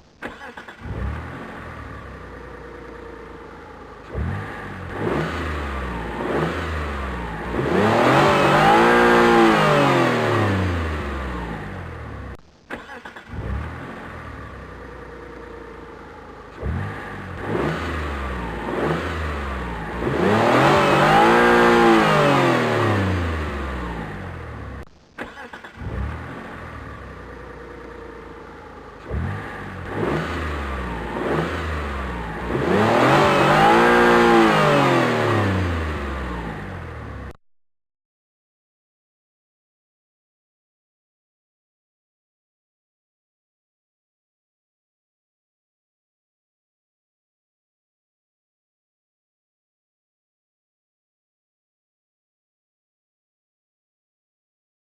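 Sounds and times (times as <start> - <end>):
car engine starting and revving: 0.0 - 37.4.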